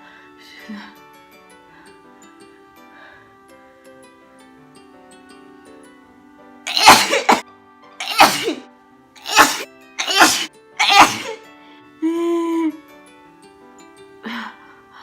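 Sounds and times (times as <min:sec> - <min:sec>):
faint background music: 0:00.0 - 0:15.0
woman sneezing: 0:06.7 - 0:07.4, 0:08.0 - 0:08.6, 0:09.2 - 0:11.4.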